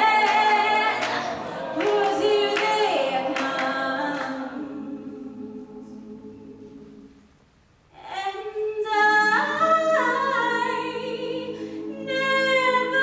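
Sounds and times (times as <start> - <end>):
woman singing lead: 0.0 - 5.2
backing voices singing: 0.0 - 7.2, 8.7 - 13.0.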